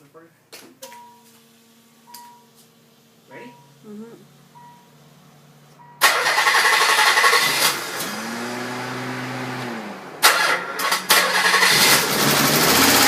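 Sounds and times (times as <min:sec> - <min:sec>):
car engine starting and running: 0:02.8 - 0:13.0.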